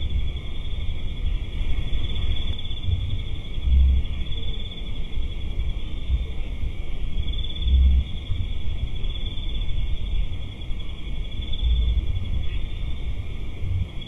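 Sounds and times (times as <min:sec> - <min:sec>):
insects trilling: 0:00.0 - 0:14.0
low rumble: 0:02.8 - 0:04.2.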